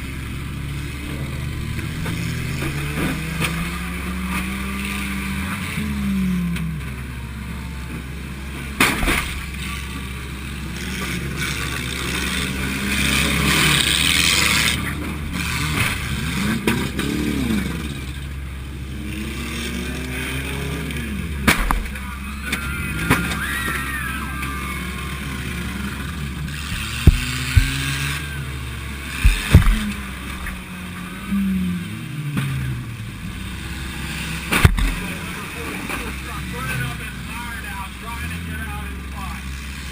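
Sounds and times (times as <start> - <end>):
car engine revving: 0.0 - 39.9
cars crashing together: 8.7 - 9.9, 20.9 - 30.7, 34.4 - 36.9
sharp bangs: 26.5 - 28.2, 29.2 - 30.1.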